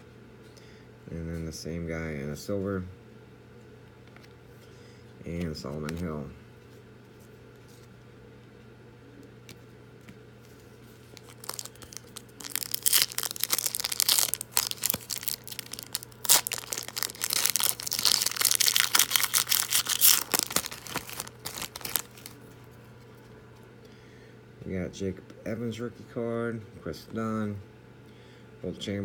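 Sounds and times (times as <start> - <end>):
foil wrapper tearing and crinkling: 11.1 - 22.4.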